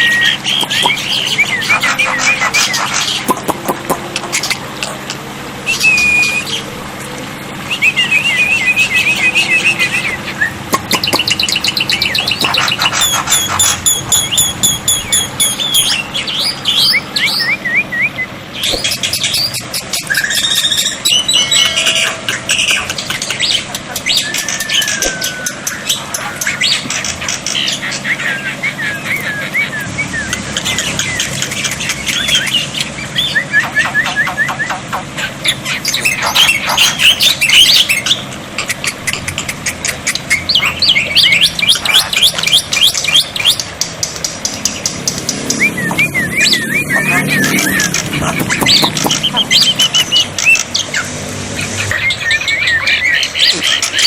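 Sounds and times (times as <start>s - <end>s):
starling singing: 0.0s - 54.0s.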